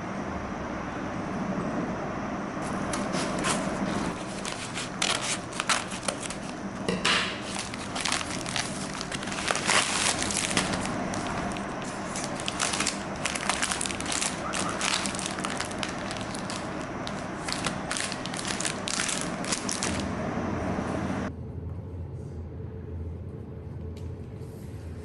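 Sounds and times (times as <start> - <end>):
packaging crinkling: 3.4 - 6.6, 7.3 - 20.1.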